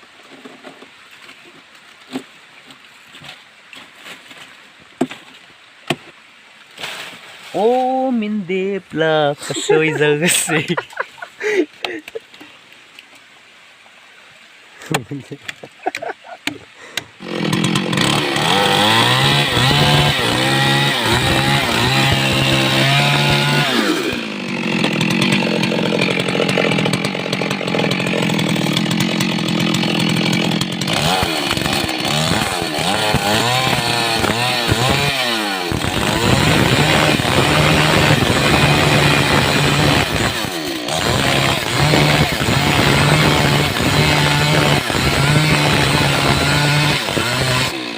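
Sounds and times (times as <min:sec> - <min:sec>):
chainsaw cutting wood: 0:14.9 - 0:47.9.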